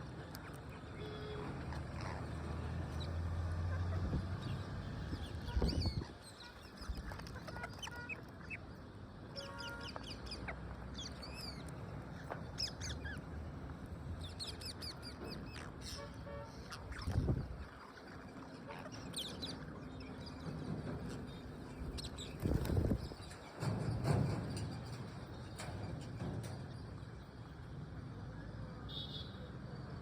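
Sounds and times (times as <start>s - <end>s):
parrots squawking and chirping: 0.3s - 3.1s, 5.4s - 8.7s, 9.4s - 13.3s, 14.3s - 19.7s.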